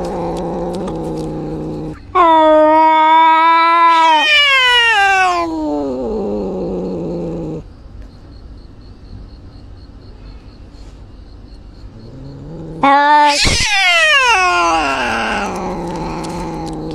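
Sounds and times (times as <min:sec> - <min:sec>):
cat yowling: 0:00.0 - 0:06.9, 0:12.6 - 0:16.9.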